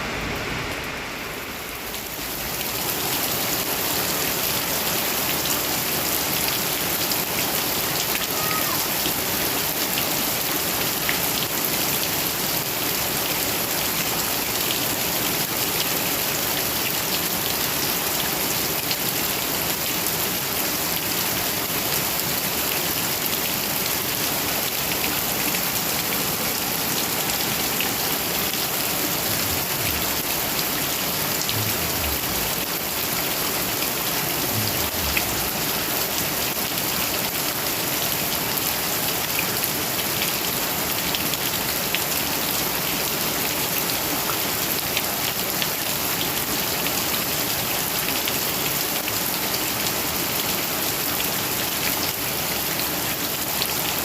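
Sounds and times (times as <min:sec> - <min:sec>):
heavy rain hiss: 0:00.0 - 0:54.0.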